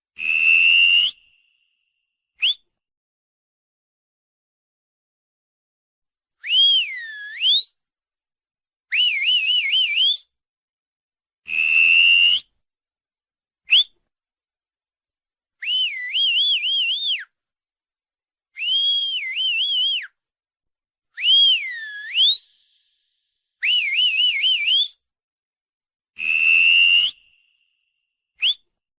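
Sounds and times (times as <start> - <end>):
person whistling: 0.2 - 1.8, 2.4 - 2.7, 6.4 - 7.8, 8.9 - 10.3, 11.5 - 12.5, 13.7 - 14.0, 15.6 - 17.4, 18.6 - 20.2, 21.2 - 23.0, 23.6 - 25.0, 26.2 - 27.8, 28.4 - 28.7.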